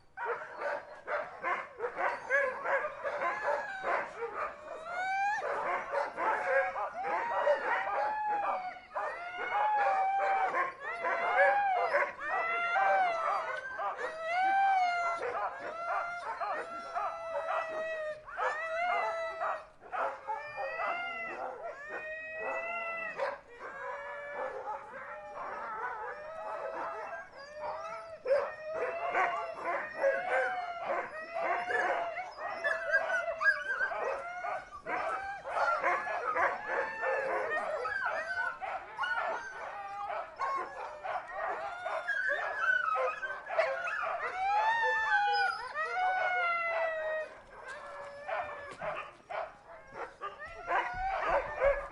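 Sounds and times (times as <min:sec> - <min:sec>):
dogs howling and yelping: 0:00.0 - 0:51.9.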